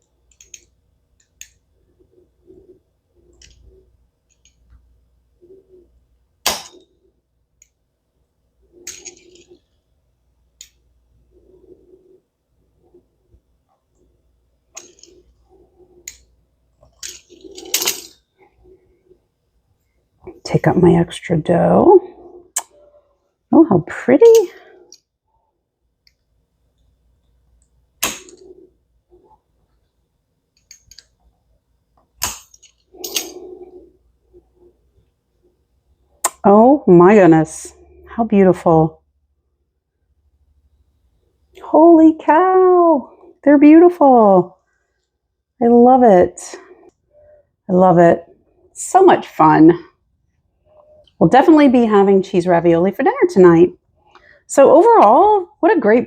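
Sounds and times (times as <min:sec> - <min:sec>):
soft rubbing: 0:32.9 - 0:35.6.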